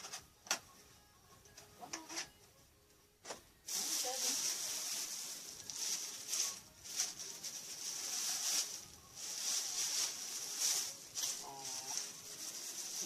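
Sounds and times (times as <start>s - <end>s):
packaging crinkling: 3.7s - 13.0s.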